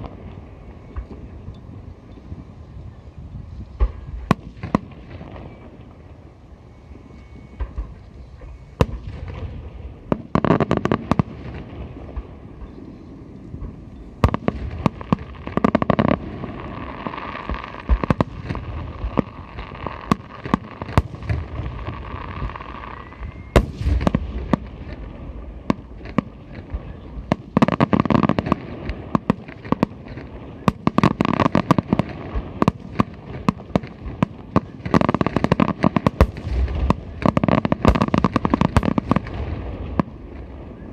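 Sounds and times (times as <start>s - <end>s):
fireworks crackling: 0.0s - 2.8s, 3.5s - 40.9s
firework shells bursting: 17.4s - 40.5s.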